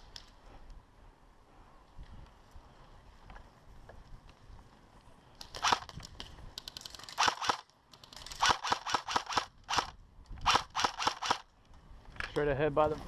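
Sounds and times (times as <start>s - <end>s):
airsoft guns firing: 5.4s - 6.0s, 6.8s - 7.7s, 8.3s - 11.5s.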